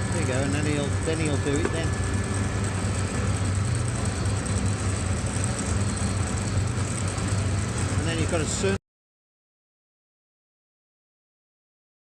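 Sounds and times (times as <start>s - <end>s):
mechanical drone: 0.0s - 8.8s.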